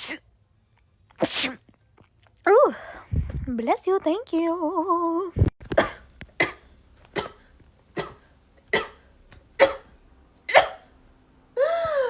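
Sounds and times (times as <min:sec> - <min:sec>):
person sneezing: 0:01.2 - 0:01.6.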